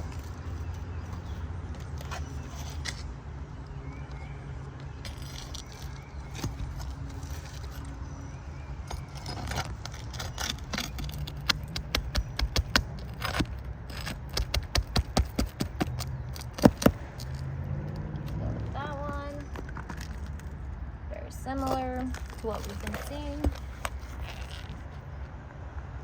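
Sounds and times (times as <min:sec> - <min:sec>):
metal tool scraping shingles: 0:05.1 - 0:08.0, 0:08.8 - 0:17.5.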